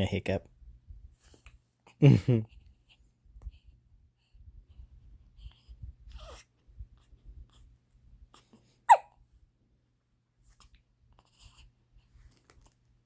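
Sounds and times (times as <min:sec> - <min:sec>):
small soft sounds: 0:00.3 - 0:13.0
baby hiccuping: 0:08.8 - 0:09.2.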